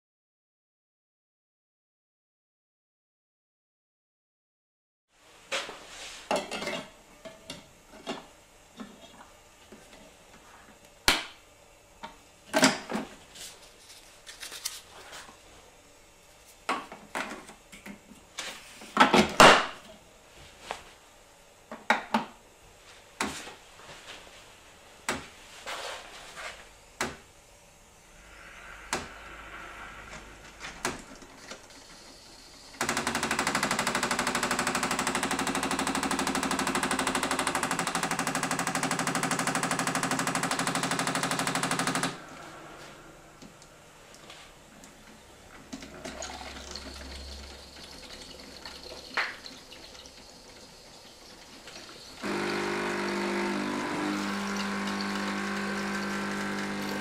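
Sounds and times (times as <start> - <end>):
coffee maker pump buzzing: 30.6 - 43.7, 44.8 - 57.0.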